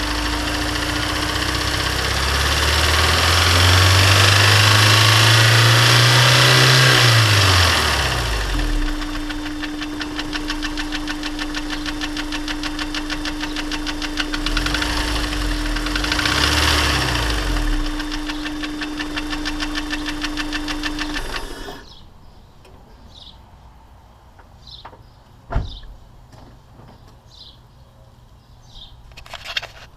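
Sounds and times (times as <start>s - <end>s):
car engine ticking knock: 8.4s - 21.8s
short thump: 24.8s - 27.0s.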